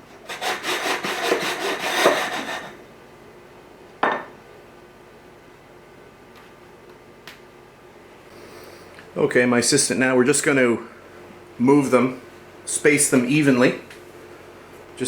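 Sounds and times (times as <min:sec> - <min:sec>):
dough cutter scraping dough: 0:00.0 - 0:02.8.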